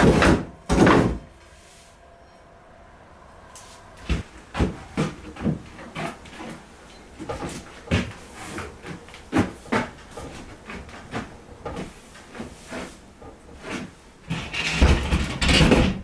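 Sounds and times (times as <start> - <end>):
irregular knocks and clunks: 4.0 - 12.6, 13.2 - 16.0.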